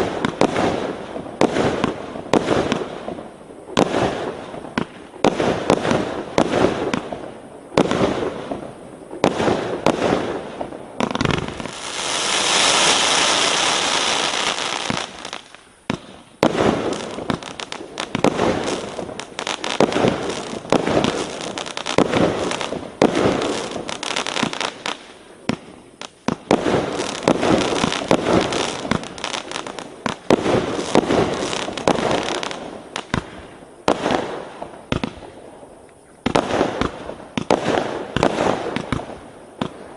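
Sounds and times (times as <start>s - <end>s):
fireworks bangs: 0.0s - 39.9s
fireworks crackling hiss: 0.0s - 39.9s.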